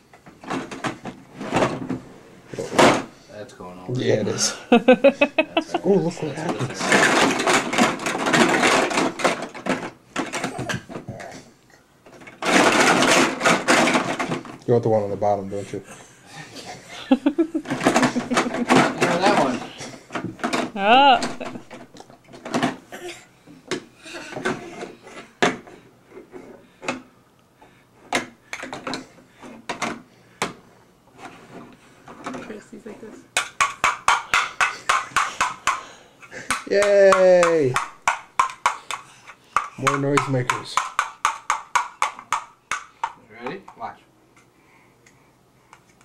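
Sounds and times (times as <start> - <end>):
objects rattling and clattering: 0.2 - 3.1, 5.0 - 14.6, 17.1 - 23.0, 23.7 - 27.1, 31.2 - 32.6, 33.2 - 43.2.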